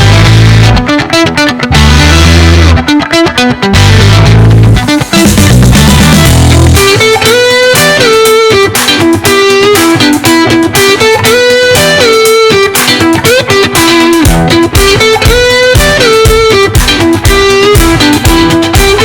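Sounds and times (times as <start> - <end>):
heavy bass: 0.0 - 0.9, 1.7 - 2.9, 3.7 - 8.0, 14.2 - 19.0
electric guitar music with beat: 0.0 - 19.0.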